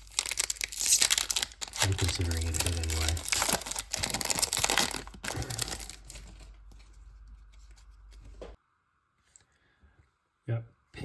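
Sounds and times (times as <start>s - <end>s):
foil wrapper crinkling and tearing: 0.0s - 6.8s.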